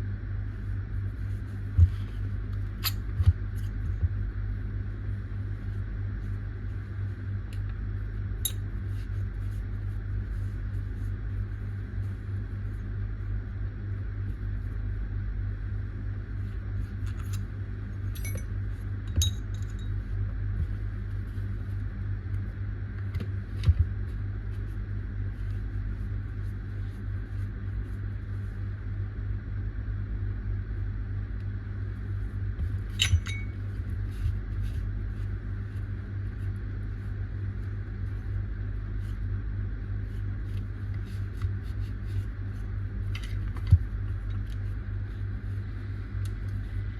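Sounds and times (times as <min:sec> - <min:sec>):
steady low hum: 0:00.0 - 0:46.9
sharp metallic clinks: 0:33.0 - 0:33.6.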